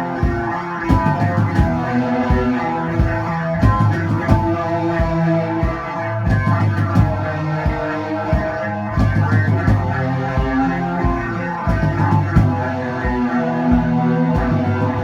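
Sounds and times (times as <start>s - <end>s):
drum kit hits: 0.0s - 15.0s
guitar chords ringing: 0.0s - 15.0s.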